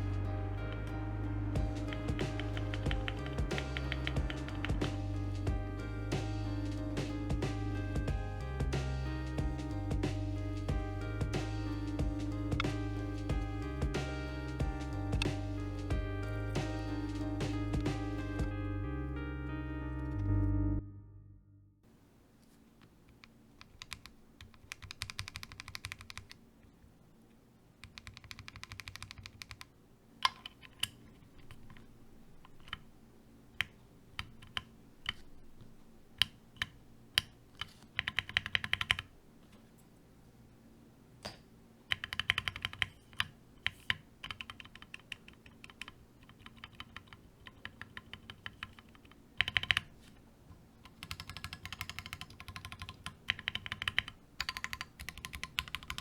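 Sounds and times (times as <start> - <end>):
mechanical keyboard typing: 1.6 - 5.4, 23.1 - 26.4, 27.8 - 32.8, 33.6 - 35.3, 36.2 - 39.1, 41.9 - 50.0, 50.8 - 56.0.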